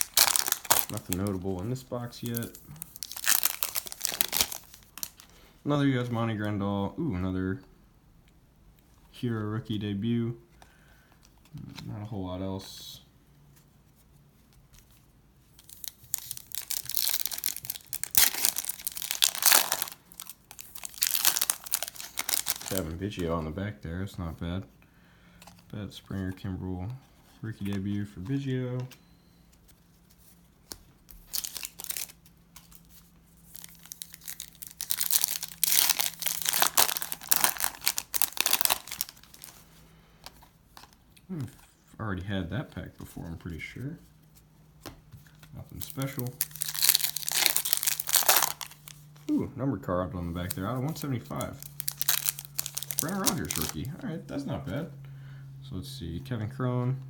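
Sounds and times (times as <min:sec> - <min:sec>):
sharp crackle of wrapper: 0:00.0 - 0:05.3, 0:15.6 - 0:23.0, 0:31.1 - 0:40.9, 0:45.4 - 0:49.3, 0:50.4 - 0:54.0
wrapper tearing and crinkling: 0:00.0 - 0:05.3, 0:15.6 - 0:23.0, 0:31.1 - 0:41.0, 0:45.4 - 0:49.3, 0:50.4 - 0:53.9.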